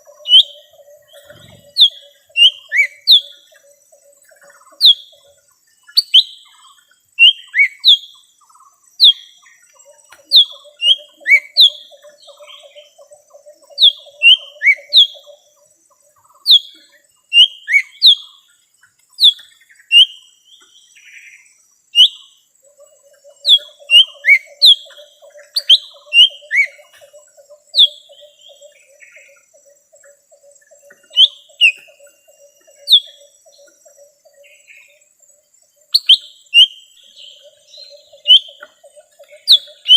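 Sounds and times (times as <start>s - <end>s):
bird calling high sharp chirps: 0.2s - 3.6s, 5.9s - 8.3s, 16.3s - 20.3s, 22.0s - 22.4s, 23.3s - 29.8s, 30.8s - 35.0s, 35.9s - 39.9s.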